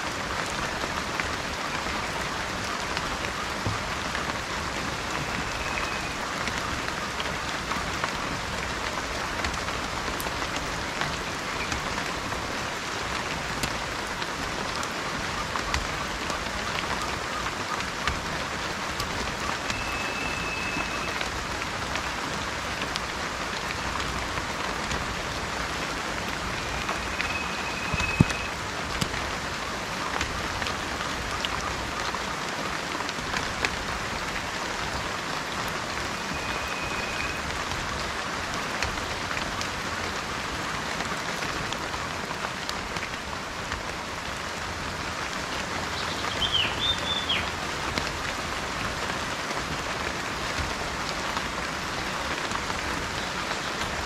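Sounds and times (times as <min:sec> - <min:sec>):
steady rain falling: 0:00.0 - 0:54.0
bird whistling and warbling: 0:26.6 - 0:28.5, 0:46.0 - 0:47.5.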